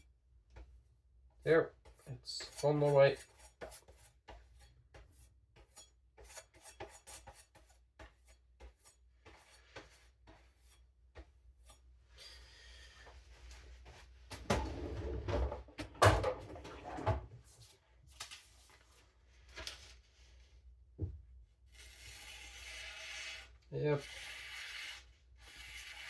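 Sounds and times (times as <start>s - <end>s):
knife blade rubbing on denim: 1.8s - 10.9s, 21.7s - 26.0s.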